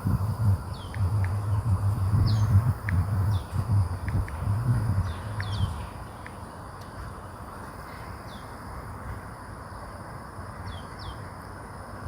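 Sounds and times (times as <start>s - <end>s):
low rumble: 0.0s - 5.9s
steady background hum: 0.0s - 12.0s.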